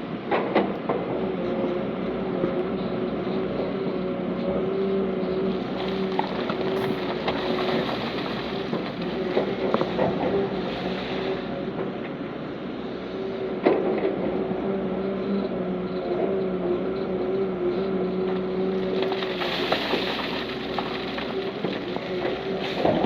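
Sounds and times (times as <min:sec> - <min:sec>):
heavy diesel engine running: 0:00.9 - 0:23.0.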